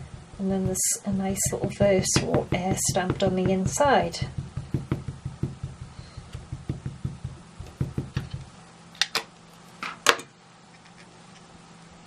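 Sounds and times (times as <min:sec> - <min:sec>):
stamp tapping on ink pad: 0:00.0 - 0:08.4.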